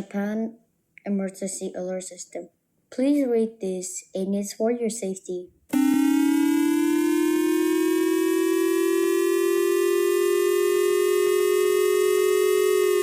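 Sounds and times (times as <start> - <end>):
siren wailing: 5.7 - 13.0.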